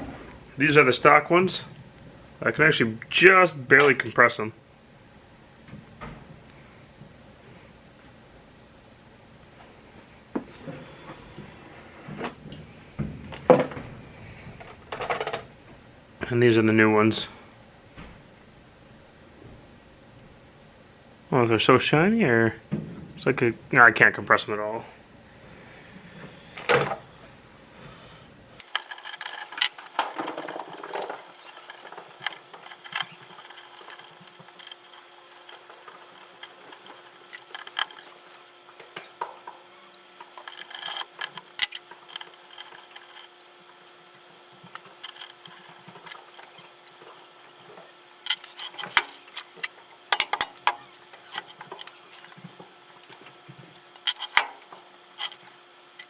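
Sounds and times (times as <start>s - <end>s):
faint steady hum: 0.0s - 56.0s
metal tools clicking and clinking: 28.6s - 56.0s.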